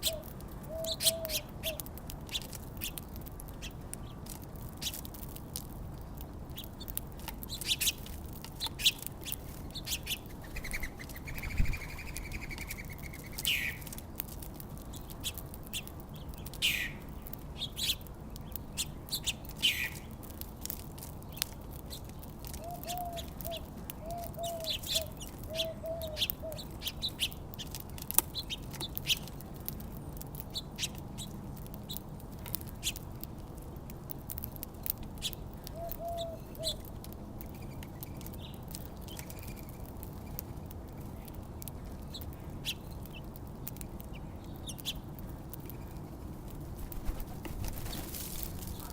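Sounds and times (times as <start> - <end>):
downward-sweeping bird calls: 0.0 - 1.8, 9.8 - 13.8, 22.6 - 27.4, 35.8 - 36.8
small birds chirping: 0.0 - 48.9.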